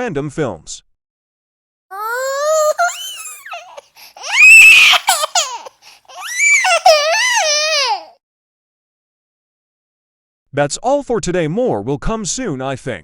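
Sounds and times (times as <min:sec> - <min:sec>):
baby crying and screaming: 0:01.9 - 0:08.2.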